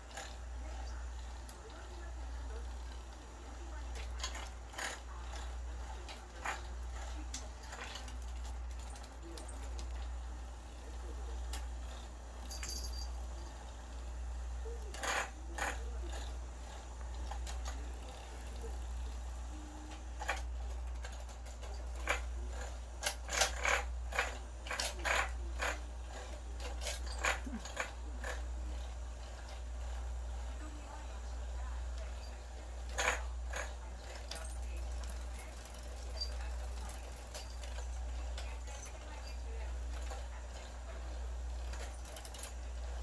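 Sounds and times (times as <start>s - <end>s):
steady low hum: 0.0s - 43.0s.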